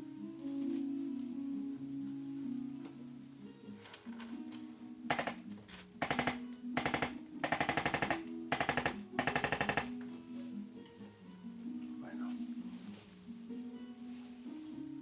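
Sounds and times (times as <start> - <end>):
soft guitar music: 0.0 - 7.4, 9.9 - 15.0
rapid mechanical tapping: 5.1 - 5.4, 6.0 - 9.9
sharp click: 5.1 - 9.9.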